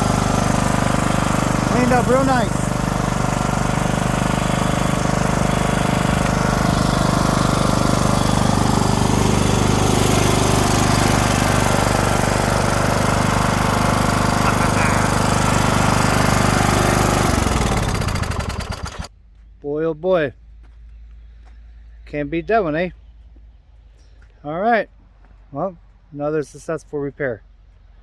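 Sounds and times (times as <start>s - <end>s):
lawn tractor engine cranking and running: 0.0s - 19.1s.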